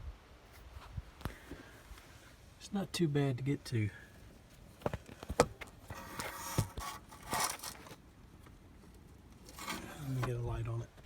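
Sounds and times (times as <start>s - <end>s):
rustling scrapes: 4.8s - 8.0s, 9.4s - 10.5s.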